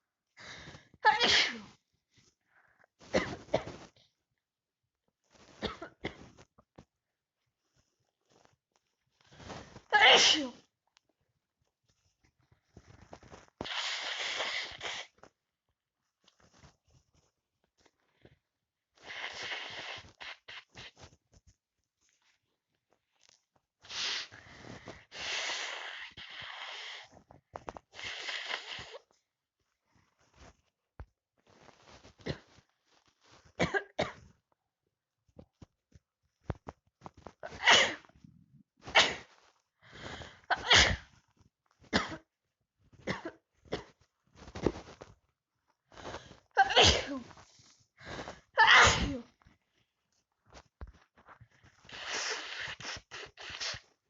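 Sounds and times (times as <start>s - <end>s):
person sneezing: 1.1s - 1.7s, 10.0s - 10.6s, 37.5s - 38.1s, 38.9s - 39.3s, 46.6s - 47.4s, 48.2s - 49.3s.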